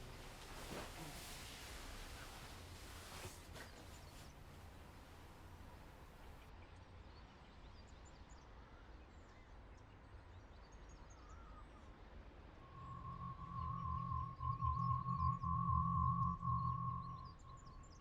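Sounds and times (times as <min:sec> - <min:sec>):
faint high chirps: 0:12.6 - 0:18.0
faint low hum: 0:12.6 - 0:18.0
music with pulsing low beat: 0:12.7 - 0:18.0.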